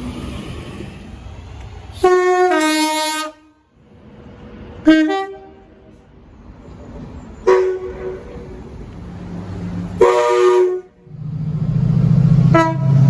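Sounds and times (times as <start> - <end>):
train running noise: 0.0 - 13.0
train two-tone horn: 2.0 - 3.7, 4.8 - 5.9, 7.5 - 8.6, 10.0 - 11.1, 12.4 - 13.0.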